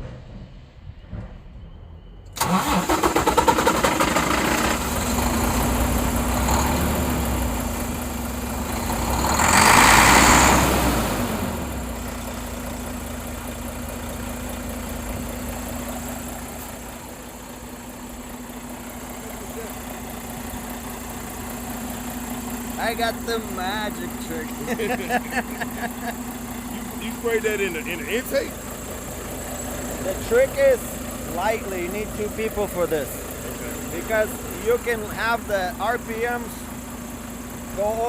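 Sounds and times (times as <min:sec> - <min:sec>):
diesel truck engine starting and idling: 0:00.0 - 0:38.0.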